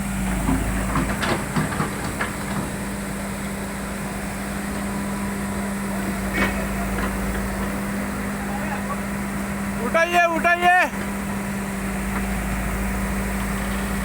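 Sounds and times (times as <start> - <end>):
diesel engine running: 0.0 - 14.0
metallic clanks and knocks: 0.4 - 2.9.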